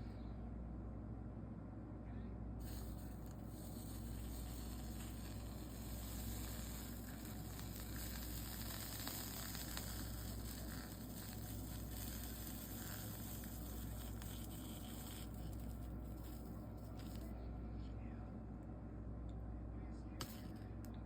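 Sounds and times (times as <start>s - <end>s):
flux sizzling: 2.6s - 17.3s.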